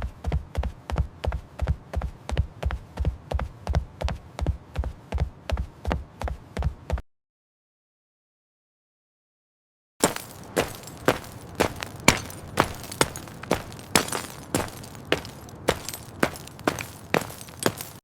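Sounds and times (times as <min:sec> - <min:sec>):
running footsteps on hard surface: 0:10.0 - 0:18.0.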